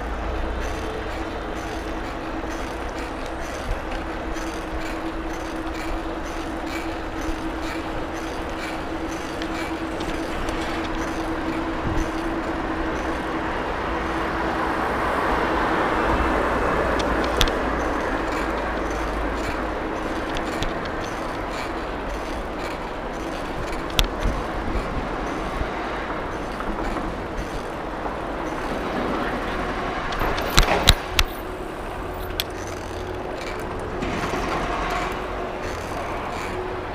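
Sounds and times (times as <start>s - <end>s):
street traffic rushing: 0.0s - 36.9s
sharp clicks: 16.9s - 25.5s.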